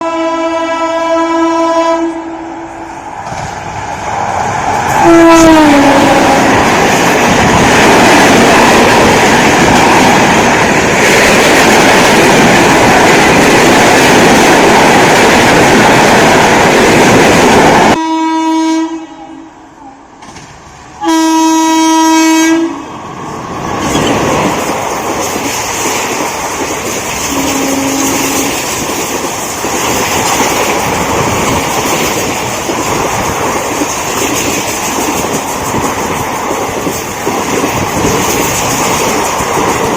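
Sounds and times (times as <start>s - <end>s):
locomotive horn: 0.0s - 2.7s, 5.0s - 6.7s, 17.9s - 20.2s, 21.0s - 22.9s, 27.3s - 28.6s
train rushing past: 0.0s - 39.9s
train rolling: 0.8s - 18.0s, 19.2s - 39.9s.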